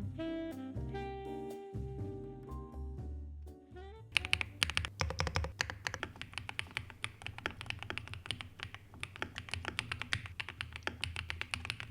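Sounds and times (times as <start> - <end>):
mechanical keyboard typing: 4.2 - 11.9.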